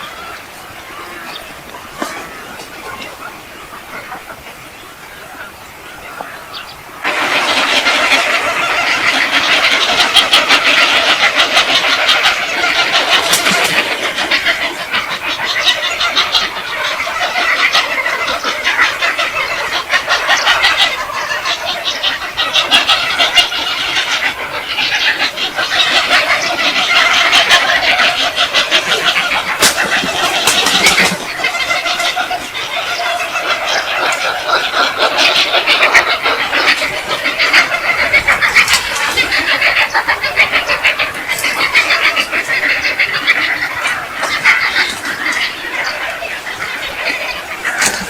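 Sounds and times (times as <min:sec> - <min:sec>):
birds chattering: 0:00.0 - 0:48.0.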